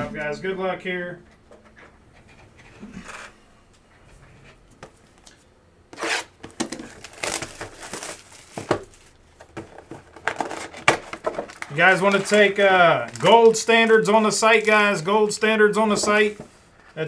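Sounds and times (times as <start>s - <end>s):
card wrappers tearing and crinkling: 6.0s - 16.4s.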